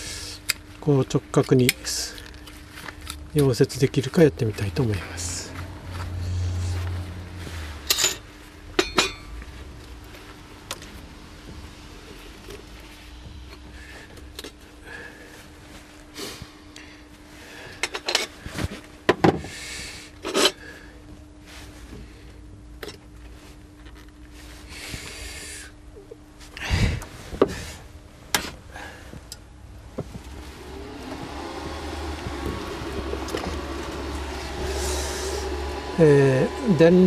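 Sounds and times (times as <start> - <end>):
loud low hum: 0.0 - 17.8, 28.7 - 37.0
faint steady hum: 0.0 - 37.0.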